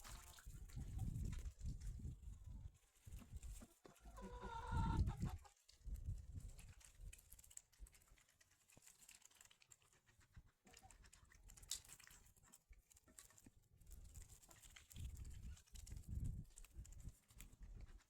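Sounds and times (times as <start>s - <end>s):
beaks pecking at feed: 5.4s - 18.0s.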